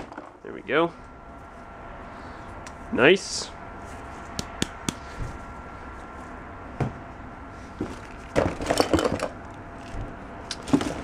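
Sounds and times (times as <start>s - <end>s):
small objects clattering in a box: 8.0s - 9.3s.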